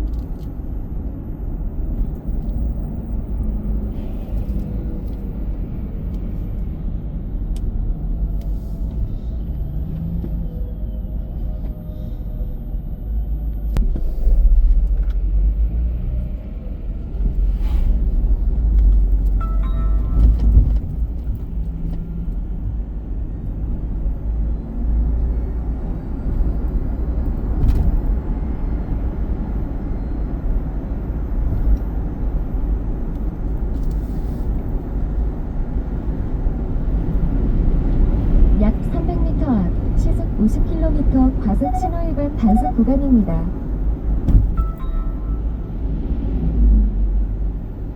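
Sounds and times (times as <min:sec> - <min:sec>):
car road and engine rumble: 0:00.0 - 0:47.9
short tonal sound: 0:19.4 - 0:20.6, 0:44.5 - 0:45.7.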